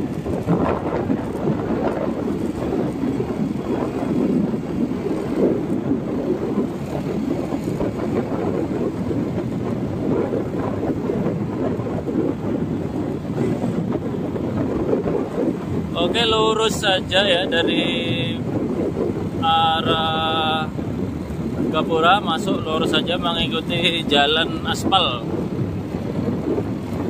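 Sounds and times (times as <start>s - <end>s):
vehicle road and wind noise: 0.0s - 27.0s.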